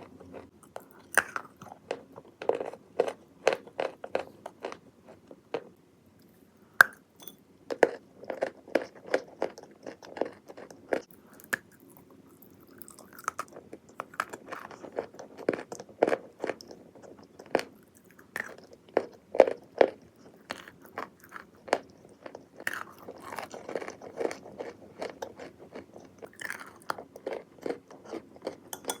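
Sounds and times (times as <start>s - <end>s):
clay crunching as chewed: 0.0s - 7.0s, 7.7s - 29.0s.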